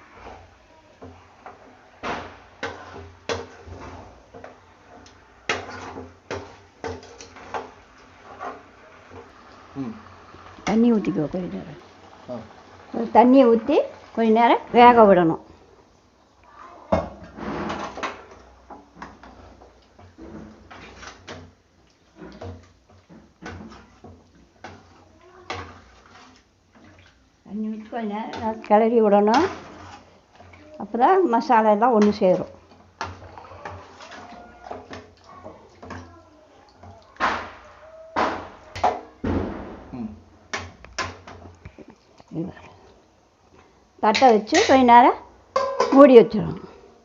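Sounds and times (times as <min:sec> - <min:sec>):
utensil scraping a cooking pot: 0:00.0 - 0:15.6, 0:17.2 - 0:39.2
metal ladle clanking on pot: 0:44.1 - 0:44.9, 0:45.5 - 0:46.1.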